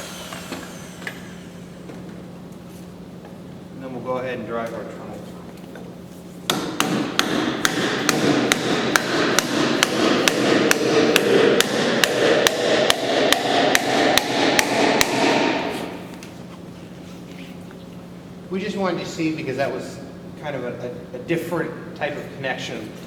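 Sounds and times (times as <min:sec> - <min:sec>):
hammer blows on wooden peg: 0:06.5 - 0:16.0.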